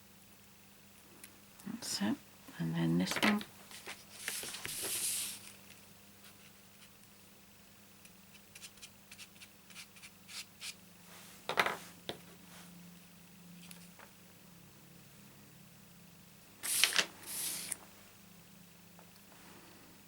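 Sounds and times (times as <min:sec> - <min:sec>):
faint steady hum: 0:00.0 - 0:20.0
glue pen on paper: 0:08.3 - 0:10.8.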